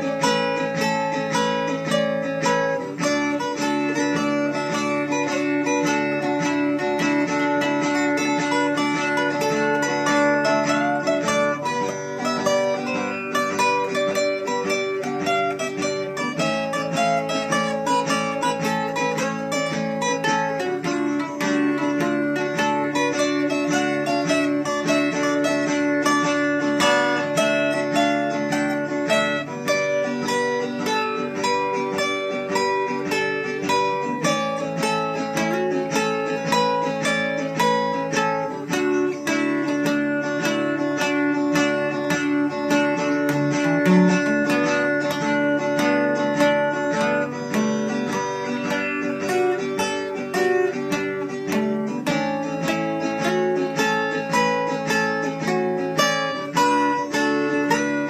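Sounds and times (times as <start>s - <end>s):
acoustic guitar strumming: 0.0s - 58.0s.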